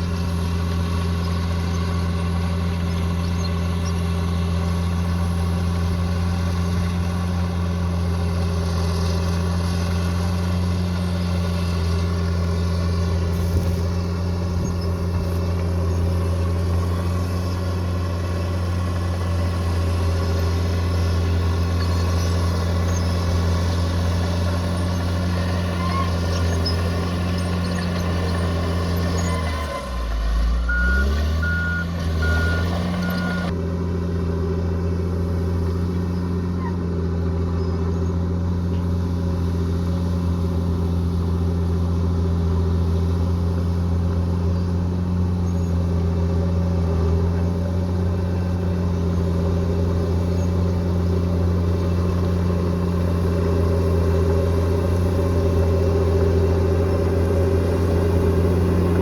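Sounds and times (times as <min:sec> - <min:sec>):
bulldozer diesel engine running: 0:00.0 - 0:59.0
reversing alarm beeps: 0:30.7 - 0:33.5.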